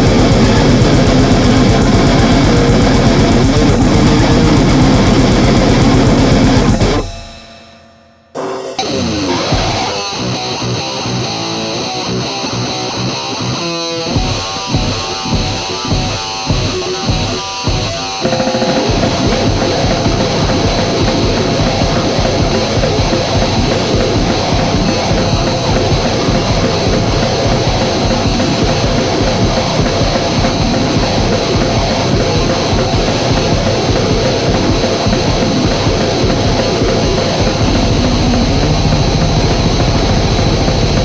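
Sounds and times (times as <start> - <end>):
fluttering bass hum: 0.0 - 7.1, 18.3 - 41.0
heavily distorted noise music: 0.0 - 7.6, 8.4 - 41.0.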